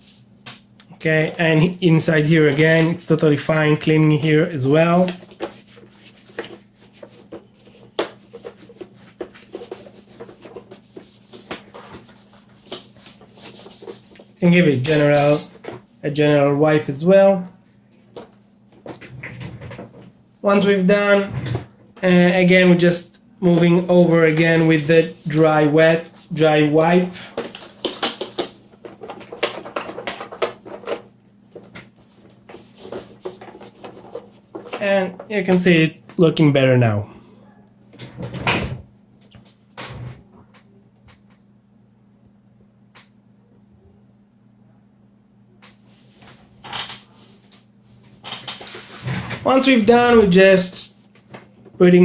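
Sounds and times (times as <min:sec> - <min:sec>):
wet wipe rubbing plastic: 0:04.8 - 0:14.4, 0:32.0 - 0:34.8.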